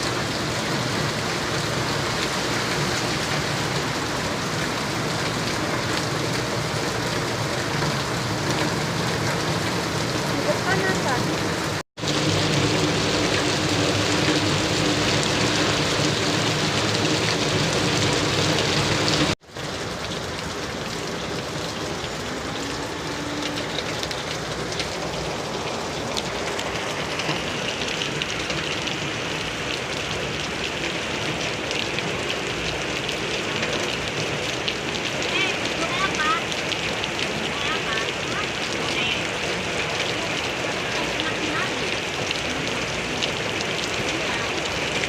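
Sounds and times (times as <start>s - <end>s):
heavy rain falling: 0.0s - 45.0s.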